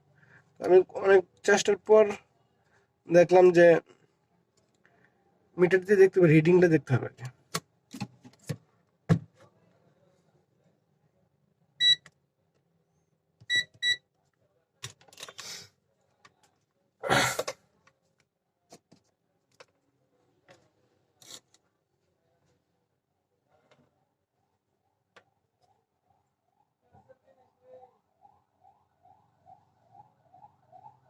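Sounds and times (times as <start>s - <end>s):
multimeter beeps: 11.8s - 12.1s, 13.4s - 14.0s.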